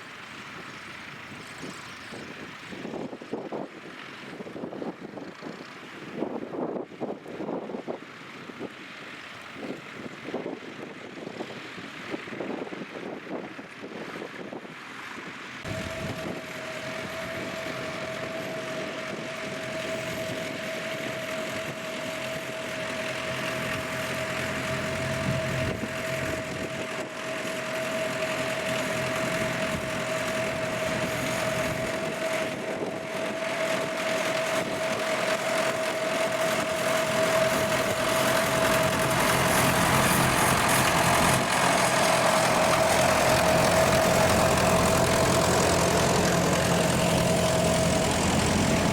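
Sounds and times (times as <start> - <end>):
tractor engine running: 0.0 - 48.9
high whine: 15.7 - 48.9.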